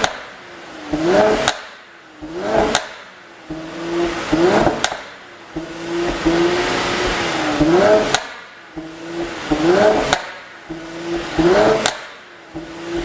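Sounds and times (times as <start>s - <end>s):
car exhaust revving: 0.0s - 13.0s
exhaust pops: 0.0s - 13.0s.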